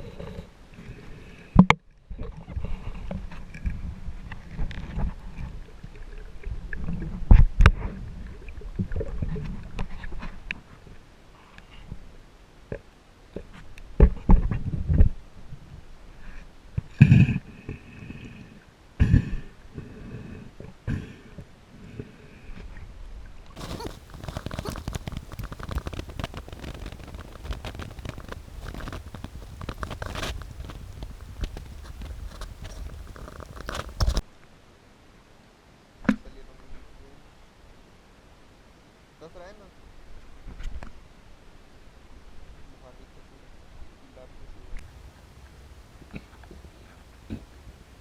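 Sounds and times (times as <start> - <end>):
small clicks: 23.6 - 34.2
underwater crackling and patter: 23.6 - 34.2
water sloshing and rumbling: 23.6 - 34.2.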